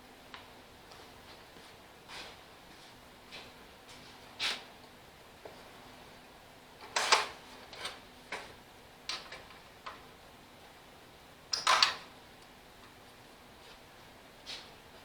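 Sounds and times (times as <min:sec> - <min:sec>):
tools and metal parts clattering: 0:11.5 - 0:12.1.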